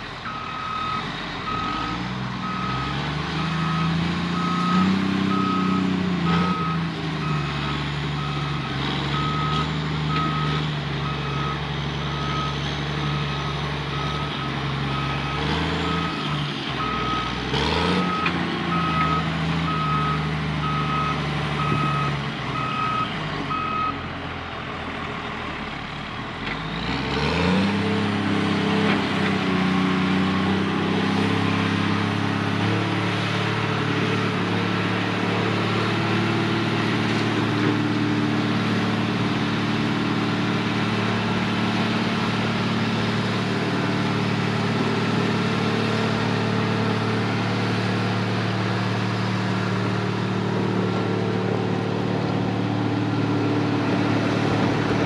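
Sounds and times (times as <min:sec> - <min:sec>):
diesel machine engine running: 0:00.0 - 0:55.0
reversing alarm beeping: 0:00.3 - 0:24.0.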